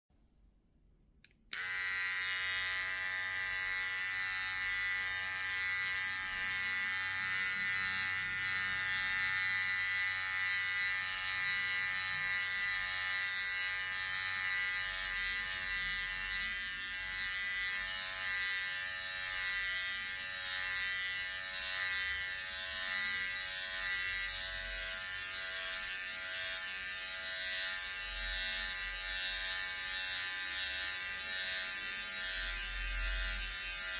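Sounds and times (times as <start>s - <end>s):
hair clippers switch click: 1.2s - 2.5s
hair clippers buzzing: 1.2s - 33.9s.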